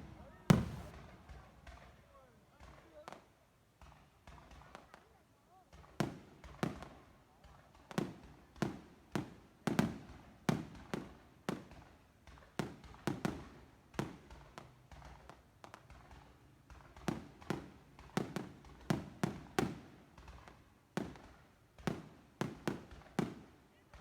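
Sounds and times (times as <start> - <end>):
fireworks bangs with echo: 0.0 - 2.0.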